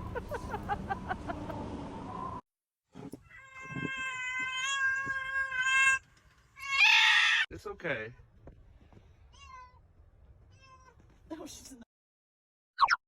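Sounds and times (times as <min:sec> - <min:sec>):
cat meowing: 0:03.2 - 0:06.0, 0:09.3 - 0:09.8.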